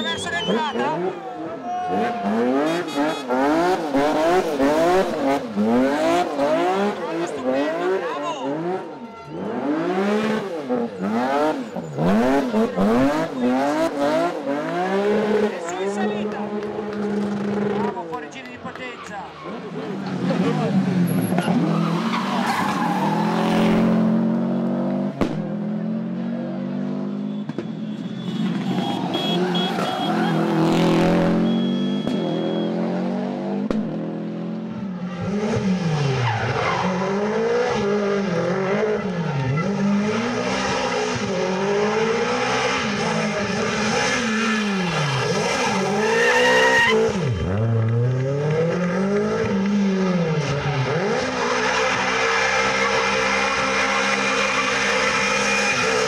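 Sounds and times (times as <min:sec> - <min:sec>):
rally car engine accelerating: 0:00.4 - 0:18.2, 0:28.5 - 0:56.0
engine revving: 0:28.3 - 0:56.0.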